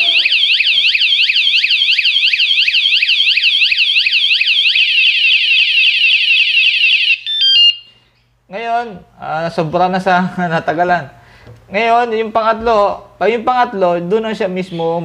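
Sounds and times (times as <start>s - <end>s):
alarm siren whooping: 0.0s - 7.9s.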